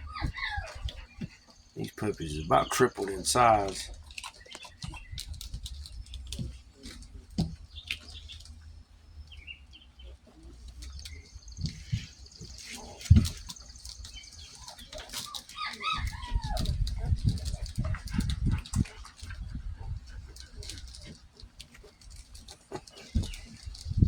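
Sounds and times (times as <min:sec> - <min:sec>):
puppies squeaking: 0:00.0 - 0:24.0
shuffling and rustling: 0:00.0 - 0:24.0.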